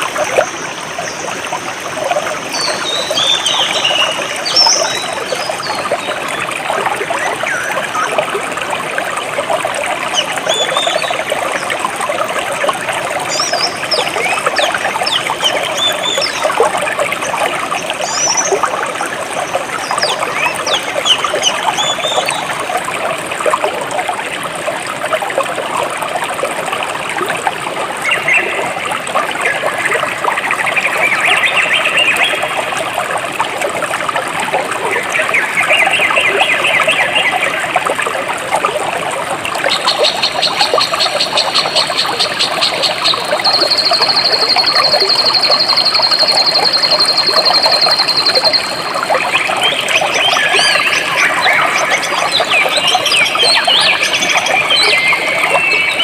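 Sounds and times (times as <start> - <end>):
stream babbling over rocks: 0.0 - 56.0
small birds chirping: 13.3 - 16.6.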